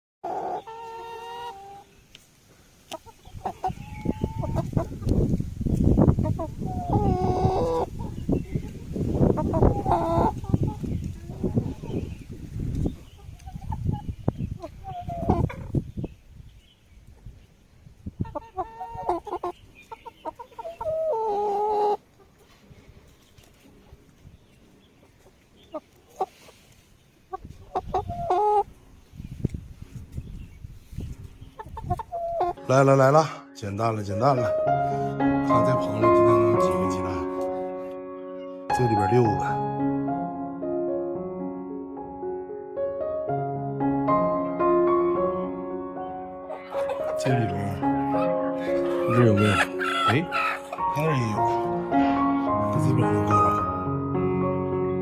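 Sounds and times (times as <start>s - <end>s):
chicken long call: 0.2s - 1.9s, 6.3s - 8.2s, 9.4s - 10.5s, 18.2s - 22.0s, 27.7s - 28.7s, 48.2s - 50.8s
chickens clucking: 0.2s - 32.8s, 46.3s - 51.9s.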